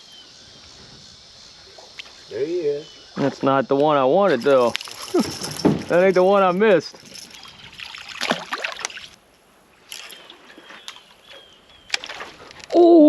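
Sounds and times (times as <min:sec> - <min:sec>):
water splashing beside boat: 0:04.3 - 0:09.2.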